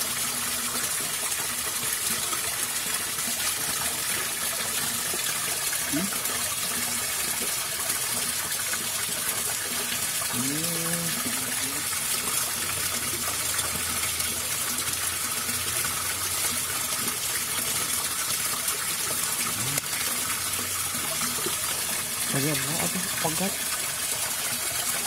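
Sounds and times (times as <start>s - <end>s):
water rushing through a channel: 0.0s - 25.0s
short voice sound: 5.9s - 6.2s, 10.3s - 12.0s, 19.5s - 19.9s.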